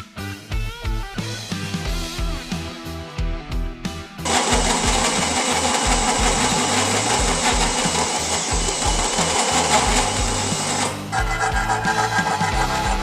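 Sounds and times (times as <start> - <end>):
background music with bass line: 0.0 - 13.0
power tool running: 4.2 - 13.0.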